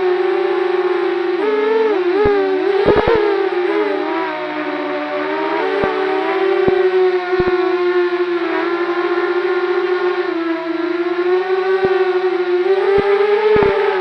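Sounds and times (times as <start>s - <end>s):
loud whine drifting in pitch: 0.0s - 14.0s
sharp clicks: 2.9s - 3.2s.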